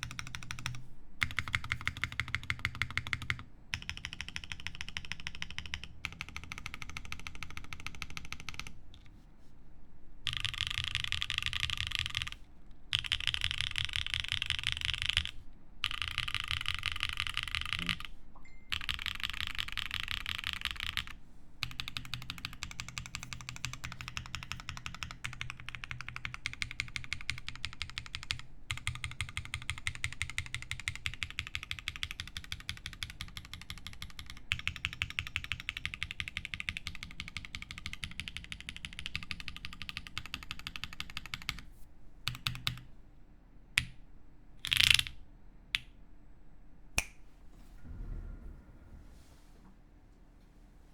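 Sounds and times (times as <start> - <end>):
fast typing on mechanical keyboard: 0.0 - 8.8, 10.2 - 18.1, 18.7 - 41.7, 42.3 - 42.8, 44.6 - 45.2.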